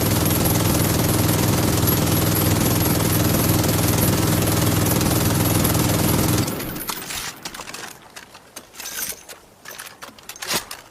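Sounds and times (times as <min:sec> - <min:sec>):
machine gun firing: 0:00.0 - 0:07.3
faint clicks and knocks: 0:06.9 - 0:10.9.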